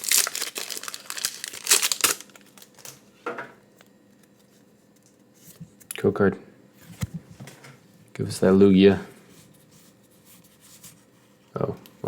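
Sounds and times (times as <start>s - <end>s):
foil wrapper crinkling and tearing: 0.0s - 3.0s.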